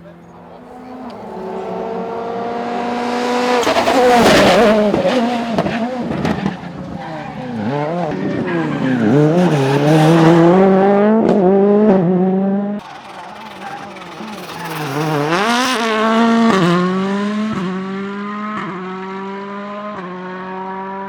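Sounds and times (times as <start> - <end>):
rally car engine revving: 0.0 - 21.0
sharp exhaust crack: 12.8 - 17.0.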